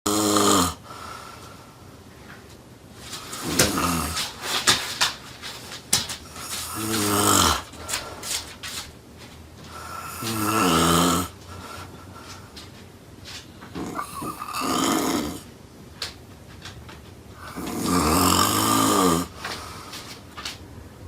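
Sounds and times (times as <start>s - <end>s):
woman snoring loudly: 0.1s - 0.8s, 3.4s - 4.2s, 6.5s - 7.9s, 9.8s - 11.4s, 13.8s - 15.5s, 17.4s - 19.4s
noisy breathing: 0.1s - 2.2s, 3.0s - 9.0s, 9.6s - 15.5s, 17.3s - 21.0s.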